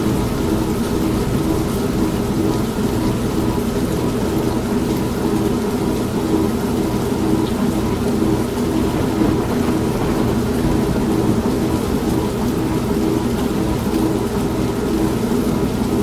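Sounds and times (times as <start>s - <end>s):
washing machine motor hum: 8.4s - 13.2s
rain: 8.5s - 13.1s
thunder: 8.6s - 13.0s.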